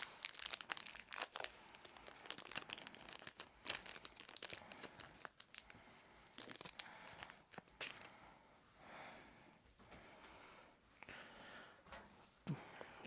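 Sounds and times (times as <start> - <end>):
plastic parts and packaging crinkling: 0.0 - 8.2.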